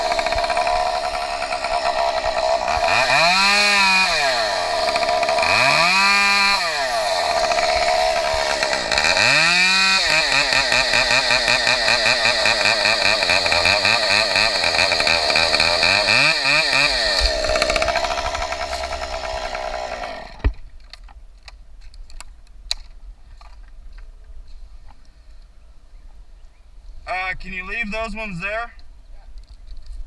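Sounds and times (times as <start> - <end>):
chainsaw revving: 0.0 - 20.5.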